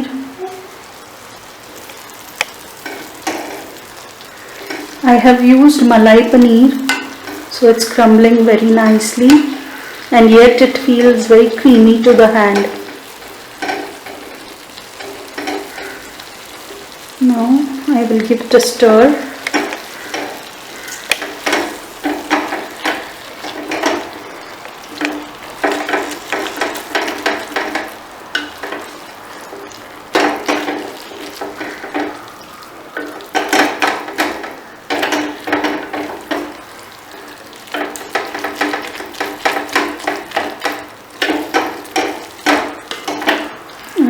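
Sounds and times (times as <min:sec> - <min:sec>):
frying sizzle: 0:00.0 - 0:44.0
utensil scraping a pan: 0:01.9 - 0:43.7.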